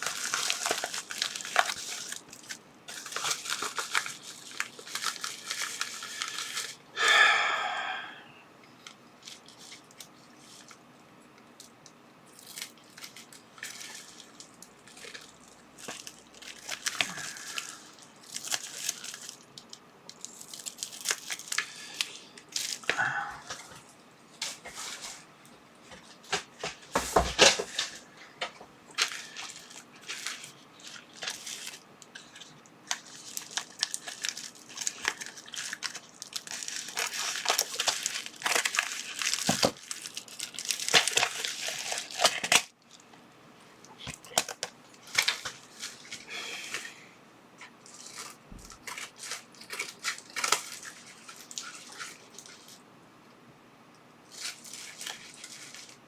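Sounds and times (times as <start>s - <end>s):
packaging crinkling and tearing: 0.0s - 6.8s, 11.6s - 23.8s, 28.9s - 43.1s, 44.0s - 47.0s, 47.6s - 52.8s, 54.3s - 56.0s.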